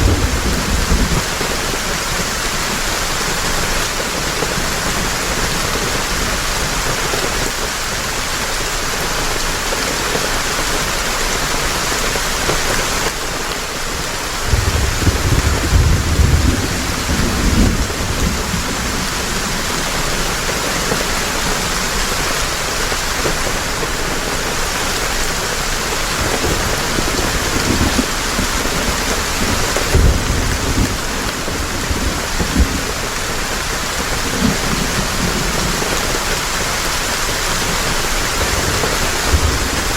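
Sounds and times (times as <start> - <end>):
thunder rumbling: 0.0 - 6.2, 14.4 - 36.6, 37.6 - 39.9
heavy rain falling: 0.0 - 39.9.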